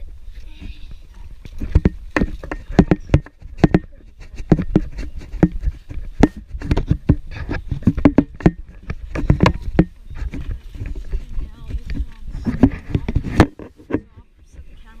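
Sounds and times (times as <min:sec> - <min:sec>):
camera handling knocks and thuds: 0:01.6 - 0:10.5, 0:11.7 - 0:14.2.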